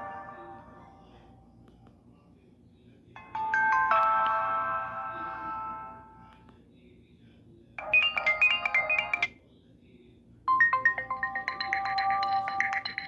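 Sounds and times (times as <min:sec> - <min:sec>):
electronic phone ringtone melody: 0:00.0 - 0:01.0, 0:03.2 - 0:06.2, 0:07.8 - 0:09.4, 0:10.5 - 0:13.0.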